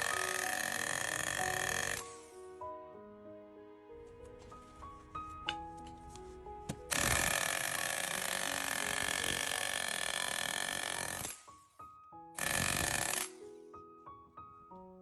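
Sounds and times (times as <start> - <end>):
power tool cutting metal: 0.0 - 2.3, 6.9 - 11.6, 12.4 - 13.3
background music: 0.0 - 15.0.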